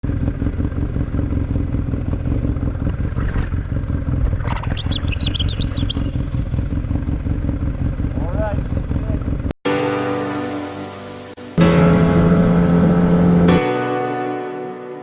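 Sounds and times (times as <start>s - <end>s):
vehicle engine droning: 0.0s - 10.0s, 11.5s - 13.6s
high squeaks: 4.3s - 6.7s.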